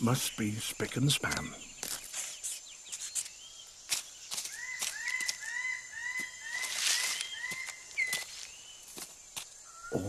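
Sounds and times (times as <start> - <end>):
high whine of forest insects: 0.0 - 10.0.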